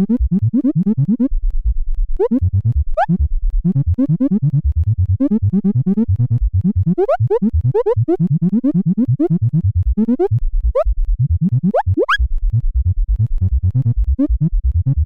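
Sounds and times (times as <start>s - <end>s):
pulsing low bass: 0.0s - 15.0s
upward-sliding synth tones: 11.8s - 12.2s.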